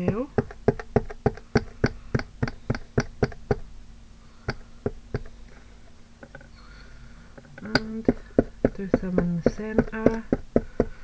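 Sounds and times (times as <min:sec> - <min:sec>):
dabbing tool tapping: 0:00.0 - 0:03.7, 0:04.4 - 0:05.5, 0:07.5 - 0:11.0.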